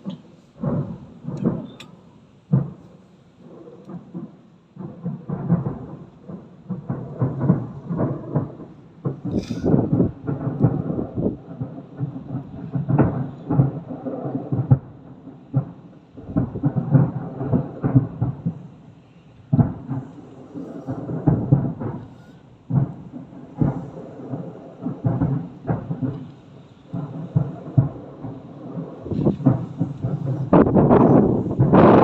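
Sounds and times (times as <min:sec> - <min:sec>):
firework shells bursting: 0:06.7 - 0:10.8, 0:29.0 - 0:32.0.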